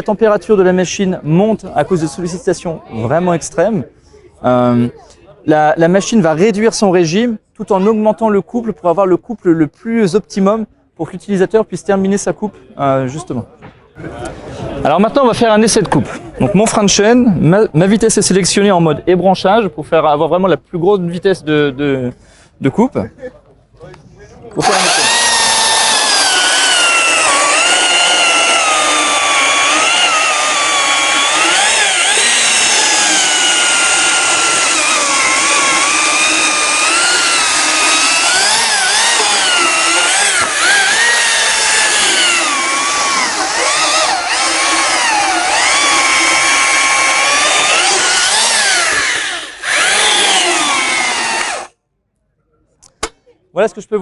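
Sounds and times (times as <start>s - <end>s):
electric chainsaw cutting wood: 24.6s - 51.7s.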